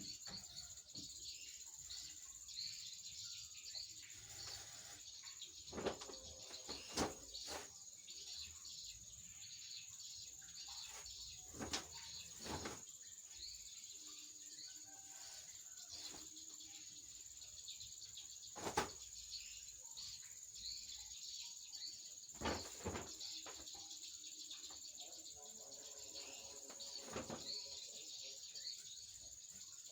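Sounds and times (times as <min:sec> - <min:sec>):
bird chirps: 0:00.0 - 0:29.9
short knocks and clatters: 0:22.4 - 0:23.7.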